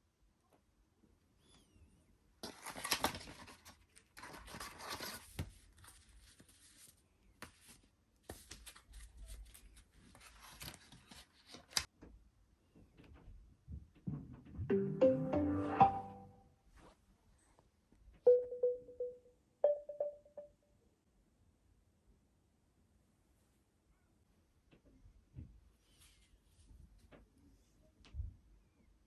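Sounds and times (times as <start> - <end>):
packaging rustling and tearing: 2.4 - 6.5.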